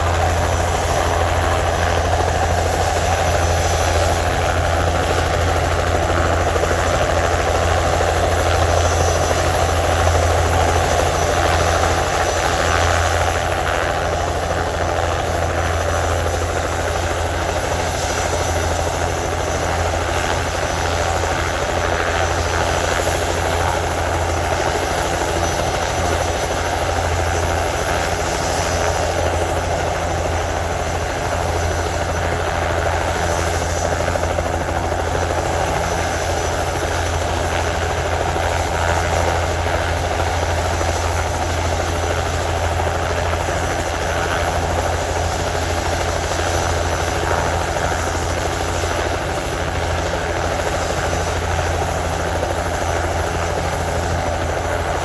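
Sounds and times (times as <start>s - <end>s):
helicopter drone: 0.0s - 55.0s.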